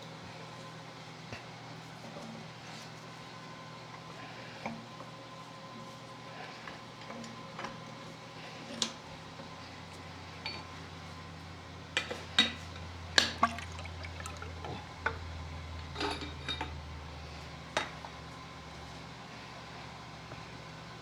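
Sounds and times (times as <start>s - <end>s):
steady low hum: 9.3s - 21.0s.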